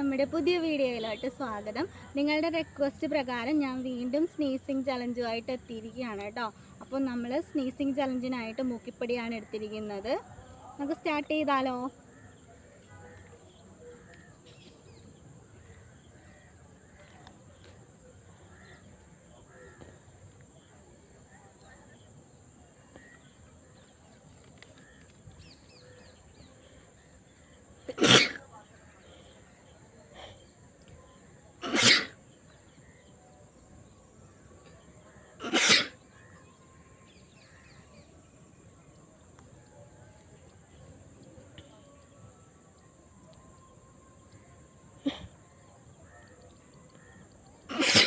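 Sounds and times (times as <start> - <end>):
faint clicks: 24.1 - 25.4
person sneezing: 27.9 - 28.4, 31.6 - 32.2, 35.4 - 36.0, 47.7 - 48.0
bird giving short calls: 35.4 - 36.0.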